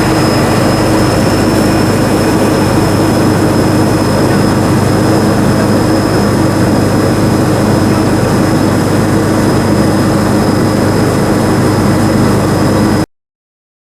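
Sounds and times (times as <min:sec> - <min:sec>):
constant high whine: 0:00.0 - 0:13.1
diesel harvester engine drone: 0:00.0 - 0:13.1.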